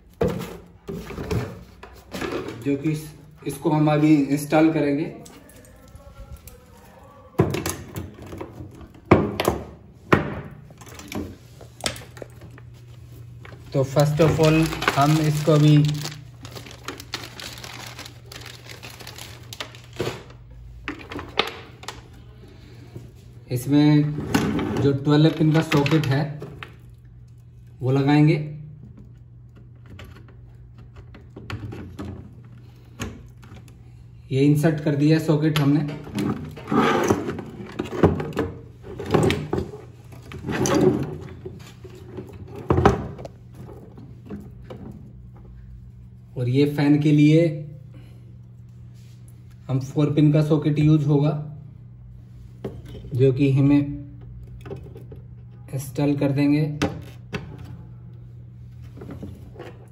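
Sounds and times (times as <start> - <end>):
steady low hum: 0.0 - 59.9
clicks and rustling of cables: 13.4 - 22.2, 25.1 - 27.8, 28.8 - 33.8.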